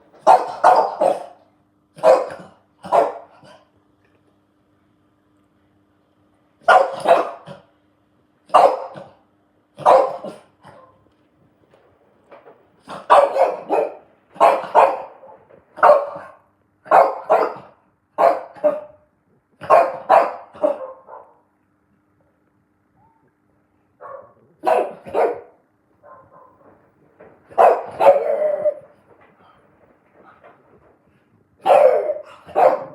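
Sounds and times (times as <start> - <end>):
dog barking: 0.2 - 1.4, 2.0 - 3.6, 6.6 - 7.7, 8.5 - 9.2, 9.8 - 11.0, 12.9 - 19.0, 19.6 - 21.5, 24.0 - 26.7, 27.5 - 28.8, 31.6 - 32.9.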